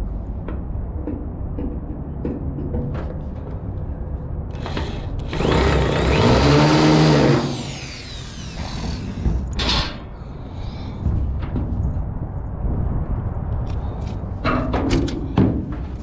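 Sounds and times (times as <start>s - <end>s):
power drill boring through metal: 4.6s - 9.6s.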